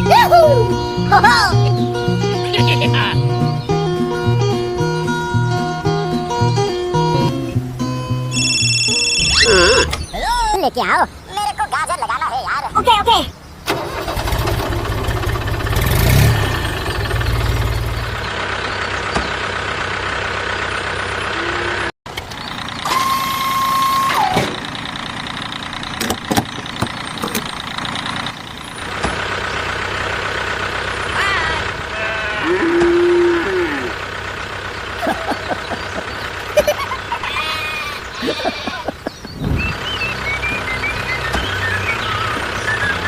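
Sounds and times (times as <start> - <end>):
vehicle engine running: 0.0 - 10.1, 13.3 - 43.0
long horn beep: 8.3 - 9.9.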